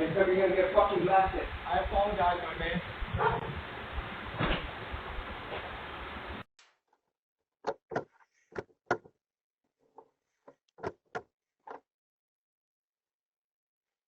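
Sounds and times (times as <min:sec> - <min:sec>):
short knocks and clicks: 0:07.6 - 0:09.2, 0:09.9 - 0:11.8.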